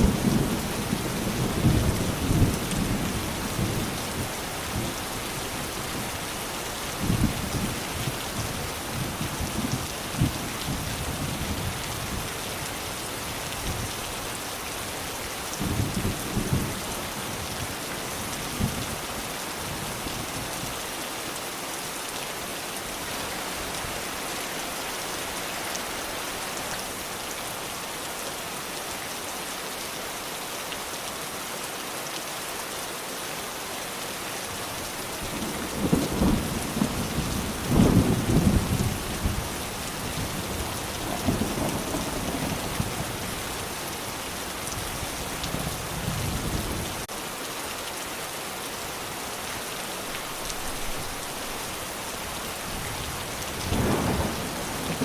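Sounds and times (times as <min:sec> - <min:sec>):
heavy rain: 0:00.0 - 0:55.0
thunder rumbling: 0:52.8 - 0:55.0.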